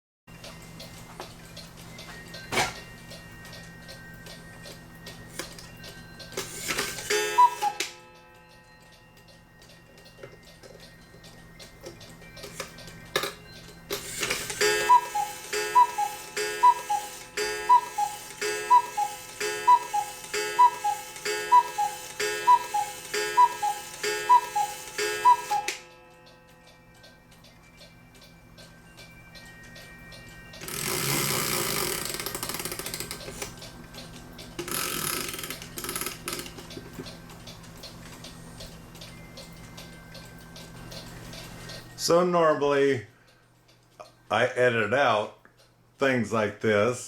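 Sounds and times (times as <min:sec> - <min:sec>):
cuckoo clock ticking: 0:00.3 - 0:45.8
two-note cuckoo calls: 0:07.1 - 0:08.0, 0:14.6 - 0:25.9.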